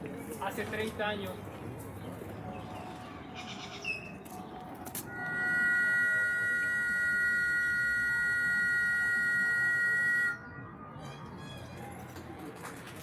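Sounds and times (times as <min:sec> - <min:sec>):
two-tone whistle blast: 0:05.1 - 0:10.4.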